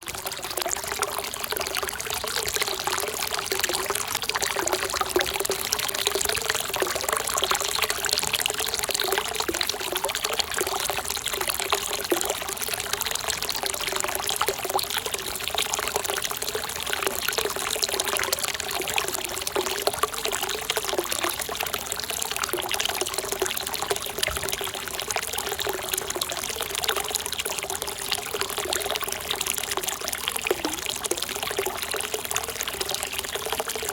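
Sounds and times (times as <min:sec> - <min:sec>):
water pouring into a pool: 0:00.0 - 0:33.9.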